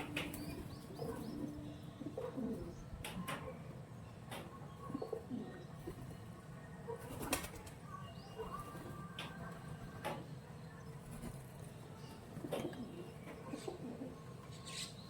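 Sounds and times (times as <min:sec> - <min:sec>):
pigeons cooing: 0:00.0 - 0:02.8, 0:12.4 - 0:15.0
wings flapping: 0:07.1 - 0:07.7.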